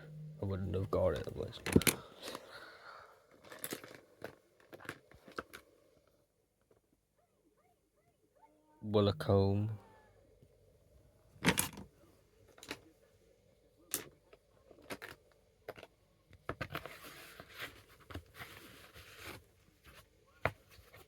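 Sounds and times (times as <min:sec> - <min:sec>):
rustling and scraping: 0:03.3 - 0:06.8, 0:14.6 - 0:21.0.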